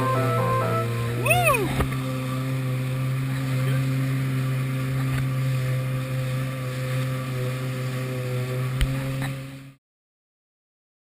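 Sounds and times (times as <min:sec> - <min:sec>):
jet ski engine running: 0:00.0 - 0:09.8.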